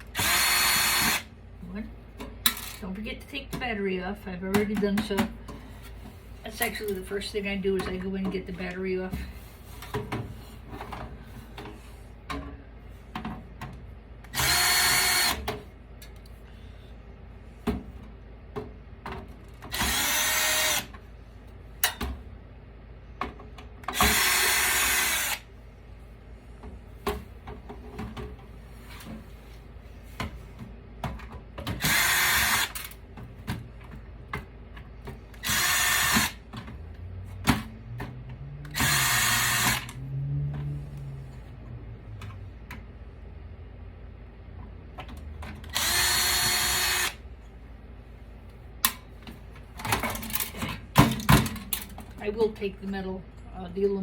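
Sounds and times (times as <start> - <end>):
power drill-driver spinning: 0.2 - 1.3, 14.3 - 15.4, 19.7 - 20.9, 23.9 - 25.5, 31.8 - 32.9, 35.4 - 36.4, 38.7 - 39.9, 45.7 - 47.2.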